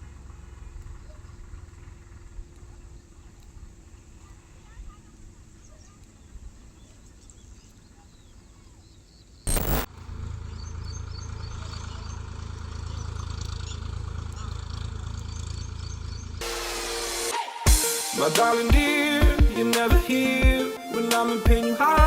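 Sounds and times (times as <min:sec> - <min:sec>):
birds chirping: 0:00.5 - 0:16.4
loud crackle: 0:09.5 - 0:16.8
quadcopter motors humming: 0:09.5 - 0:17.3.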